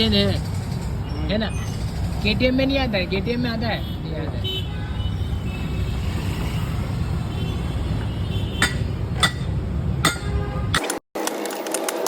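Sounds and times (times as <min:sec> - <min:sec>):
sharp metallic clinks: 0:08.6 - 0:10.9.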